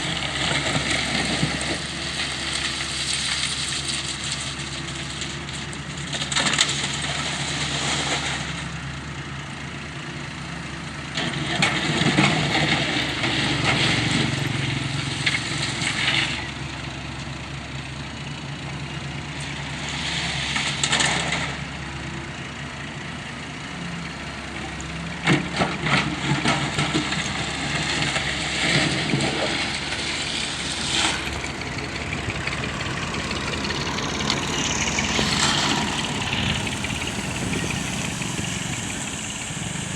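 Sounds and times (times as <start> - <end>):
diesel engine running: 0.0 - 11.1, 27.4 - 39.9
harsh noisy clatter: 29.9 - 39.9.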